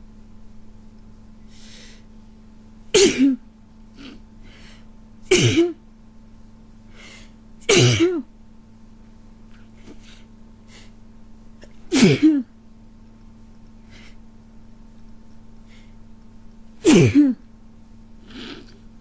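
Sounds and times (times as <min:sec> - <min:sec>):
sharp breaths drawn in: 0:01.5 - 0:02.1
person sneezing: 0:03.0 - 0:03.4, 0:05.3 - 0:05.8, 0:07.6 - 0:08.3, 0:11.6 - 0:12.5, 0:16.8 - 0:17.4.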